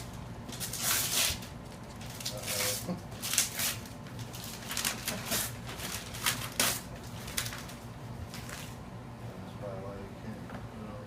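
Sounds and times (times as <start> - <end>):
paper tearing and rustling: 0.0 - 8.8.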